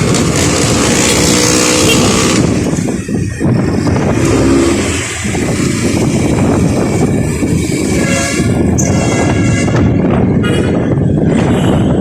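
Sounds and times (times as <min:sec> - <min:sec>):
road traffic noise: 0:00.0 - 0:12.0.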